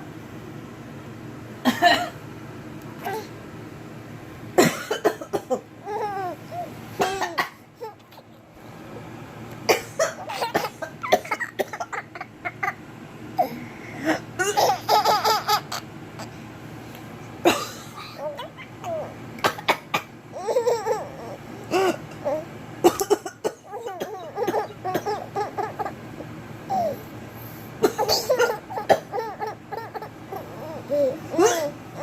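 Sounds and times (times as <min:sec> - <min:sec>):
person coughing: 0:01.7 - 0:02.2, 0:04.6 - 0:05.7, 0:07.0 - 0:07.6, 0:09.7 - 0:11.9, 0:17.4 - 0:18.3, 0:21.7 - 0:22.1, 0:27.8 - 0:29.2, 0:31.3 - 0:31.8
baby laughing and babbling: 0:03.0 - 0:03.4, 0:05.6 - 0:08.6, 0:10.0 - 0:12.8, 0:13.4 - 0:16.4, 0:17.9 - 0:22.5, 0:23.6 - 0:27.1, 0:27.9 - 0:32.0.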